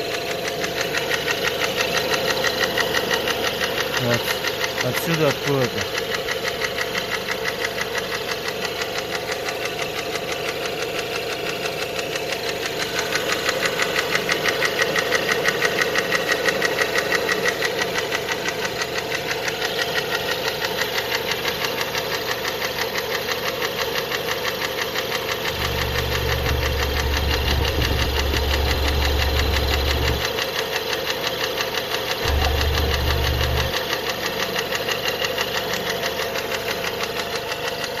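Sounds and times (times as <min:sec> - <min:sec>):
engine running with knocking: 0:00.0 - 0:38.0
low rumble: 0:25.6 - 0:30.3.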